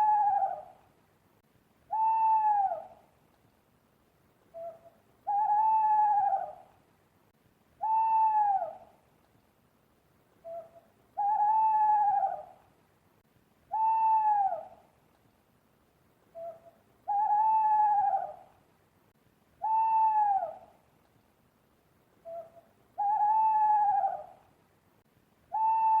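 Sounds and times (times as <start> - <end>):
owl hooting: 0.0 - 0.8, 1.9 - 3.0, 4.5 - 6.7, 7.8 - 8.9, 10.4 - 12.6, 13.7 - 14.8, 16.3 - 18.5, 19.6 - 20.8, 22.2 - 24.4, 25.5 - 26.0.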